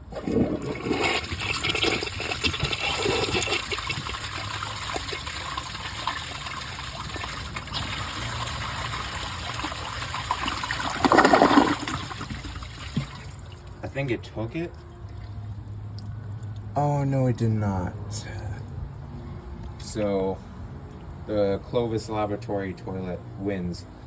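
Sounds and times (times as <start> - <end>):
toilet flushing: 0.0 - 13.7.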